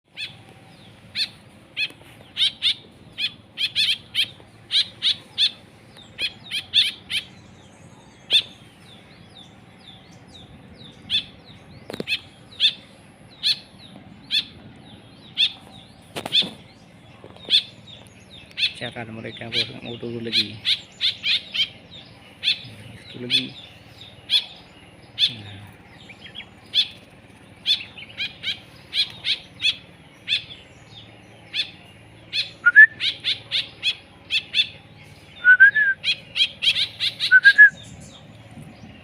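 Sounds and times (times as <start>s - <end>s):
songbird chirping: 0.1s - 39.0s.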